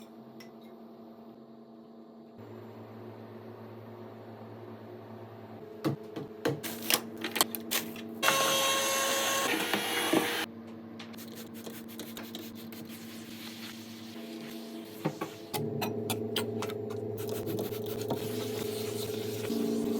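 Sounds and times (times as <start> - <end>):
kitchen appliance humming: 7.1 - 10.5.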